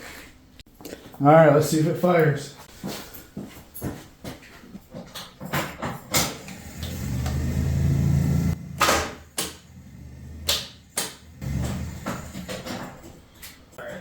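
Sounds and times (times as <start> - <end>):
car starter drone: 6.2 - 13.1.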